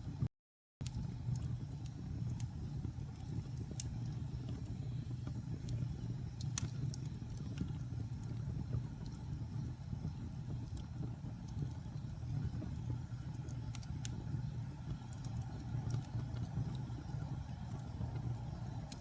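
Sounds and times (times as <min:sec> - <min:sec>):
fire crackles and pops: 0:00.1 - 0:19.0
fire flames rumbling: 0:00.1 - 0:19.0.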